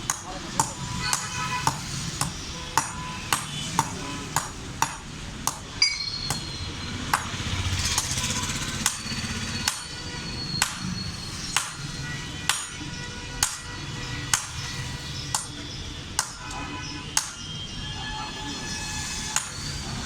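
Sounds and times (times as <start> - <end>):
hammer ringing on anvil: 5.8 - 7.4, 12.5 - 12.8.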